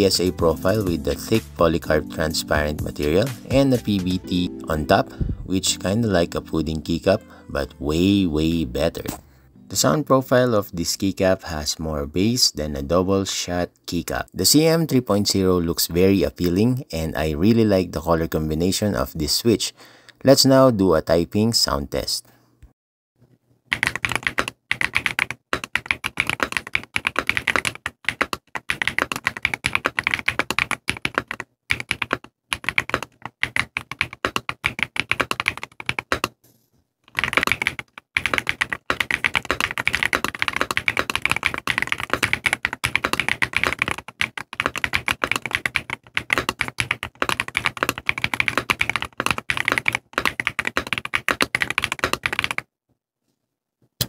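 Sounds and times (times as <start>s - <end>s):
fast typing on mechanical keyboard: 23.7s - 36.4s, 37.1s - 52.7s.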